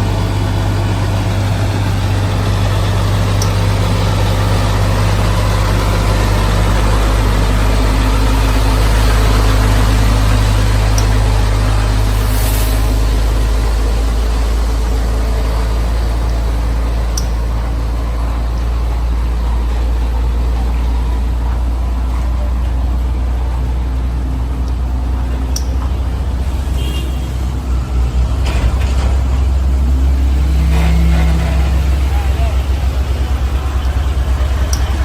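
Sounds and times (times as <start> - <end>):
heavy truck engine droning: 0.0 - 35.0
sharp clicks: 17.1 - 17.6.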